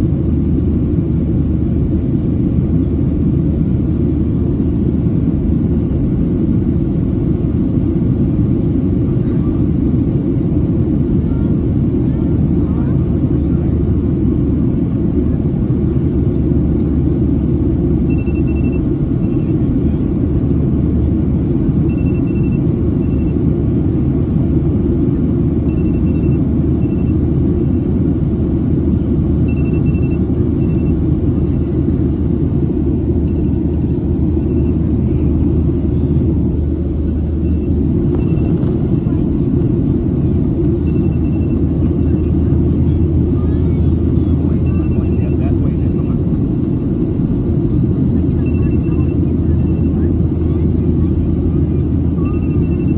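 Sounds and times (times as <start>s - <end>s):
airplane cabin rumble: 0.0s - 52.9s
short high beeps: 29.4s - 31.0s.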